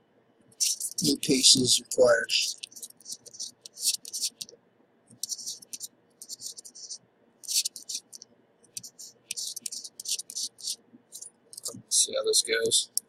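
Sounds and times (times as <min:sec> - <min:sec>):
metal tools scratching and clicking: 0:00.6 - 0:01.2, 0:02.0 - 0:04.5, 0:05.2 - 0:08.2, 0:08.8 - 0:11.8.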